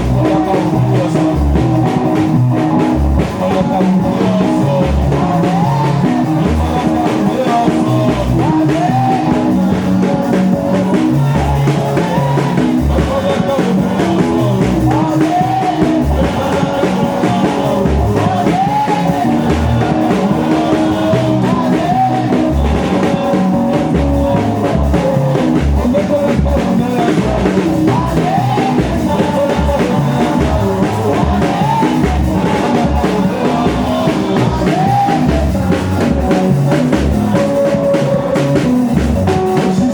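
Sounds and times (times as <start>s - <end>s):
gospel band playing: 0.0s - 39.9s
person singing: 0.0s - 39.9s.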